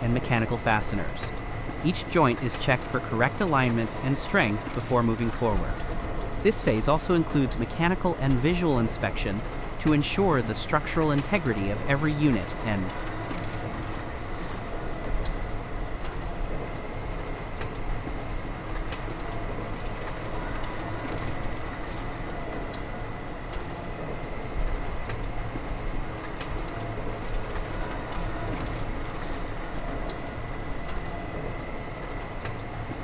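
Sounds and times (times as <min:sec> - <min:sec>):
machinery low hum: 0:00.0 - 0:13.9
constant thin whine: 0:00.0 - 0:16.7.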